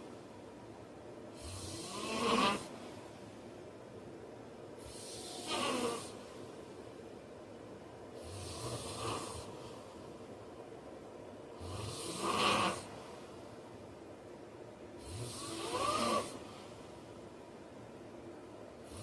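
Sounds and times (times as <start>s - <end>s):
man snoring: 1.3s - 2.7s, 4.8s - 6.2s, 8.2s - 9.7s, 11.6s - 13.0s, 15.0s - 16.5s.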